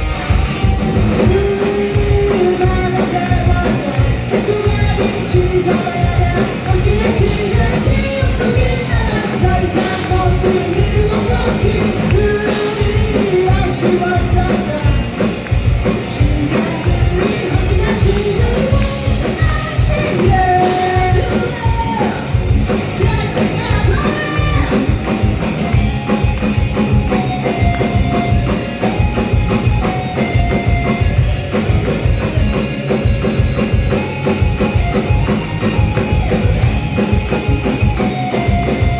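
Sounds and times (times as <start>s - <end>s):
drum kit pounding: 0.0s - 38.9s
rock band playing loudly: 0.0s - 38.9s
person singing: 1.2s - 22.4s, 23.0s - 25.8s.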